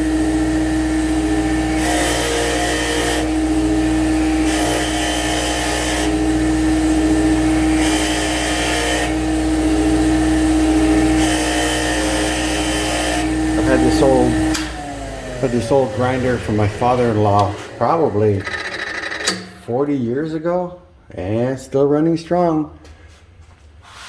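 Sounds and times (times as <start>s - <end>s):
bench grinder humming: 0.0s - 19.8s
wire brush scratching metal: 7.8s - 9.2s.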